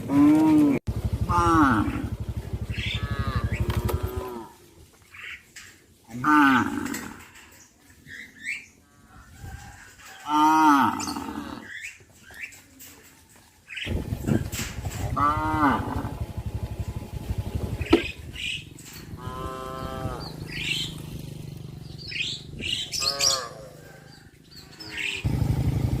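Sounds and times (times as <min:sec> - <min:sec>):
low steady rumbling: 0:00.0 - 0:04.5, 0:13.9 - 0:23.0
cows mooing: 0:00.0 - 0:04.7, 0:06.1 - 0:07.5, 0:10.2 - 0:11.8, 0:14.8 - 0:16.8, 0:18.9 - 0:21.3, 0:22.2 - 0:25.3.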